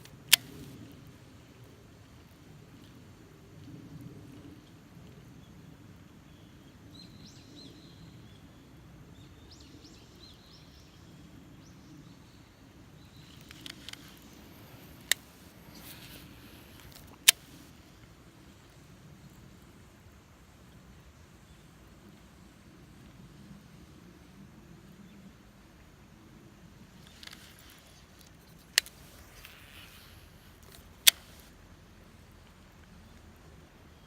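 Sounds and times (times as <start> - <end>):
sharp clicks: 0.0 - 1.0, 13.0 - 17.7, 27.0 - 31.6
outdoor background noise: 0.0 - 34.0
small birds chirping: 9.2 - 18.0, 26.9 - 34.0.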